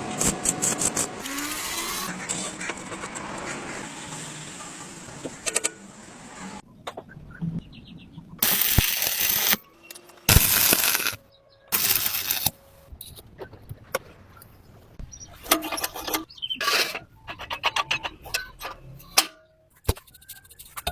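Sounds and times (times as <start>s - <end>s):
short hissing bursts: 8.4s - 9.6s, 10.3s - 11.2s, 11.8s - 12.5s.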